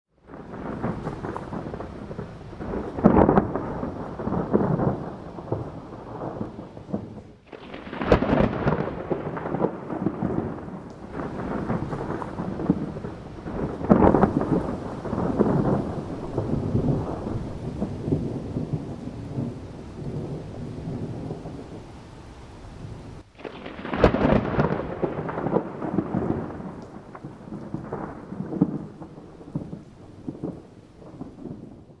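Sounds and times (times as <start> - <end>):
thunder rumbling: 0.1 - 32.0
steady hiss: 8.7 - 32.0.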